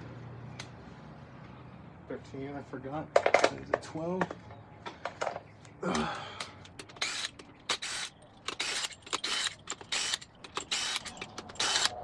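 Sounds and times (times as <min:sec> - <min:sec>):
ratchet wrench clicking: 0:06.7 - 0:12.0.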